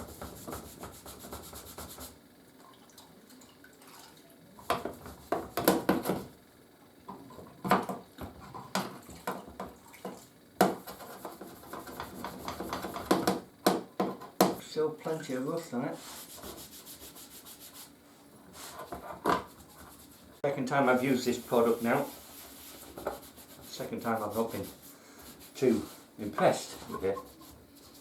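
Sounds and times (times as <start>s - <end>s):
water splashes and drips: 2.6s - 4.4s
scrubbing metal: 21.0s - 28.0s.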